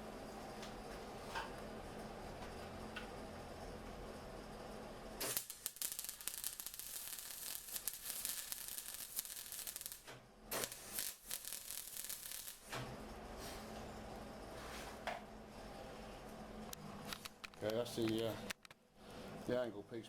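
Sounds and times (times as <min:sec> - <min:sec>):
welding crackling hiss: 0:05.2 - 0:12.8.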